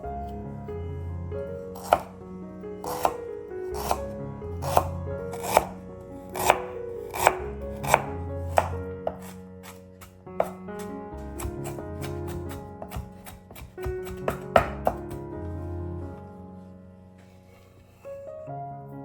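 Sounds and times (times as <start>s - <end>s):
background music: 0.0s - 19.0s
knife chopping on cutting board: 1.8s - 2.1s, 2.8s - 4.0s, 4.6s - 15.2s.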